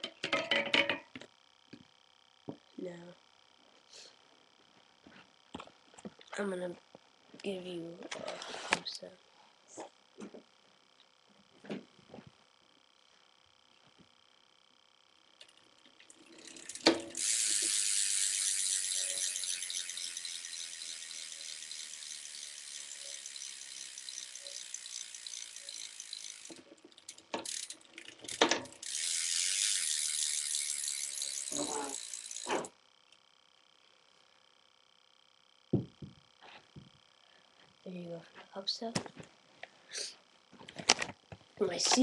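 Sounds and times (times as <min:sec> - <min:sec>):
bicycle hub freewheel clicking: 0:14.6 - 0:33.5
knock: 0:35.7 - 0:36.2.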